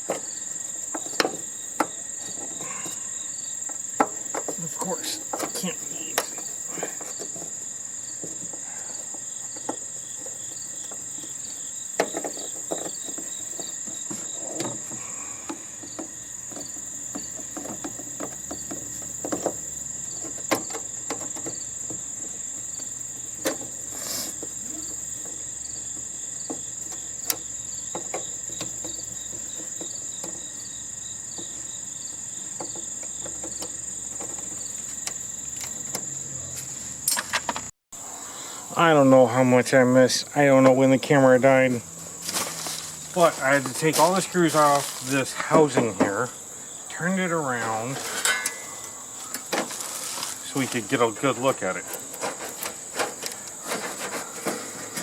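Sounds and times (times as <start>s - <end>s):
high insect chorus: 0.0s - 55.0s.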